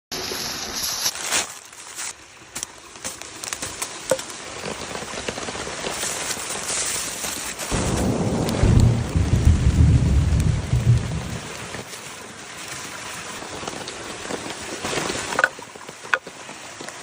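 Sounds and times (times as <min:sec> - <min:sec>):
rain falling steadily: 0:00.1 - 0:17.0
low rumble of thunder: 0:07.7 - 0:11.8
crackling ticks: 0:07.8 - 0:11.1.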